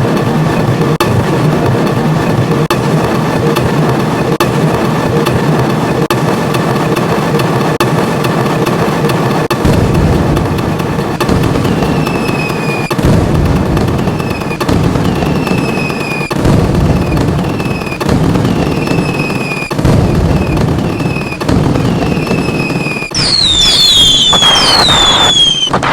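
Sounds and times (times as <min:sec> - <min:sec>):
distorted cartoon thunder: 0:00.0 - 0:25.9
falling tones: 0:11.3 - 0:25.9.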